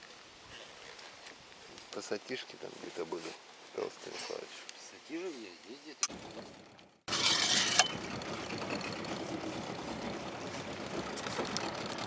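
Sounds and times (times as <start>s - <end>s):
outboard motor running: 7.8s - 12.0s.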